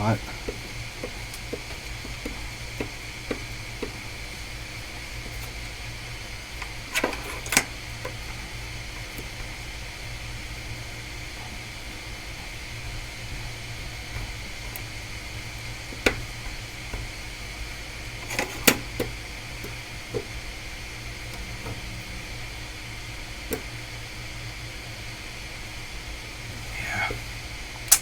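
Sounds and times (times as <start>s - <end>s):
fan-like hum: 0.0s - 28.0s
clicks and taps from tools: 0.5s - 4.0s.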